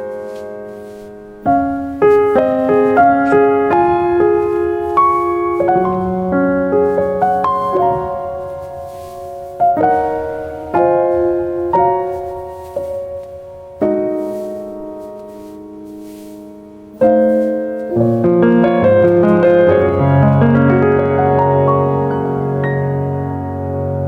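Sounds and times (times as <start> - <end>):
gentle solo piano music: 0.0 - 24.0.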